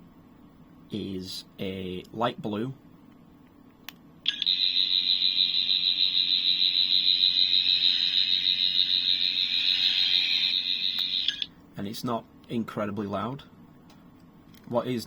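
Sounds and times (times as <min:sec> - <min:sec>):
high electronic warbling whirr: 0:04.3 - 0:11.5.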